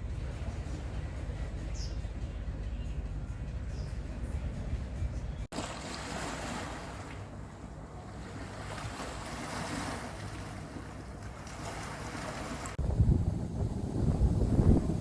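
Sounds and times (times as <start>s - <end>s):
sea water washing: 5.5s - 15.0s
wind on microphone: 11.4s - 15.0s.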